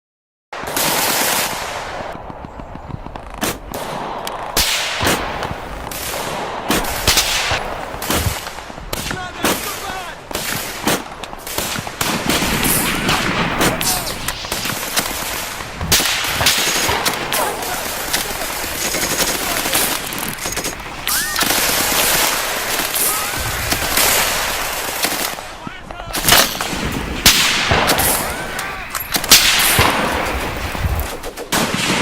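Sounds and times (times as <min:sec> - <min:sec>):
single gunshots: 0:03.4 - 0:32.0
battle noise din: 0:03.9 - 0:32.0
machine-gun bursts: 0:09.4 - 0:32.0.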